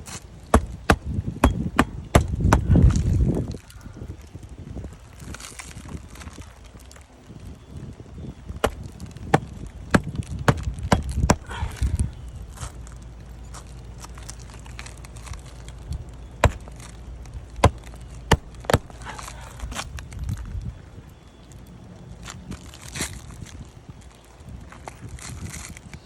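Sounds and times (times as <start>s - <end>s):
low wind rumble: 0.0s - 26.0s
hammer knocking on shingles: 0.5s - 2.8s, 8.6s - 11.5s, 16.4s - 16.7s, 17.6s - 19.0s.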